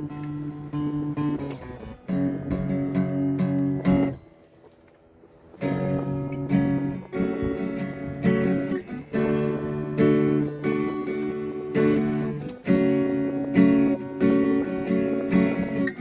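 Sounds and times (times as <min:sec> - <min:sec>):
guitar strumming chords: 0:00.0 - 0:16.0.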